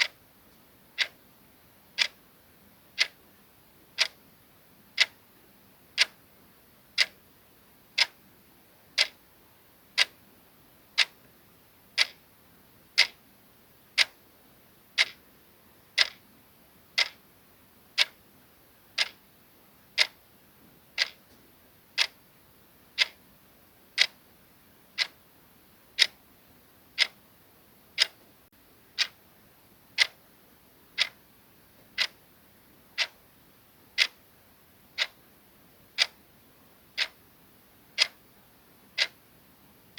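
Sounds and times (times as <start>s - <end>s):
clock ticking: 0.0s - 0.2s, 0.9s - 1.2s, 1.9s - 2.2s, 2.9s - 3.2s, 3.9s - 4.2s, 4.9s - 5.2s, 5.9s - 6.2s, 6.9s - 7.2s, 8.0s - 8.2s, 8.9s - 9.2s, 9.9s - 10.2s, 11.0s - 11.2s, 11.9s - 12.2s, 12.9s - 13.2s, 14.0s - 14.2s, 15.0s - 15.2s, 16.0s - 16.2s, 16.9s - 17.2s, 18.0s - 18.2s, 19.0s - 19.2s, 20.0s - 20.2s, 20.9s - 21.3s, 22.0s - 22.2s, 22.9s - 23.2s, 24.0s - 24.3s, 25.0s - 25.2s, 25.9s - 26.2s, 26.9s - 27.2s, 27.9s - 28.3s, 29.0s - 29.2s, 30.0s - 30.2s, 31.0s - 31.2s, 31.8s - 32.2s, 33.0s - 33.2s, 33.9s - 34.2s, 34.9s - 35.2s, 35.9s - 36.2s, 36.9s - 37.2s, 38.0s - 38.3s, 38.9s - 39.3s.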